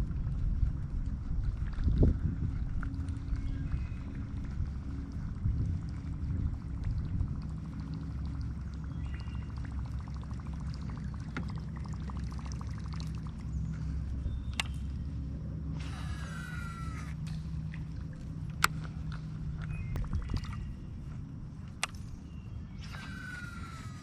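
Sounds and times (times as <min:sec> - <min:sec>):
water lapping against boat hull: 0:00.0 - 0:24.0
whir with falling pitch: 0:00.0 - 0:24.0
wind rumble: 0:00.0 - 0:24.0
sharp clicks: 0:14.5 - 0:14.8.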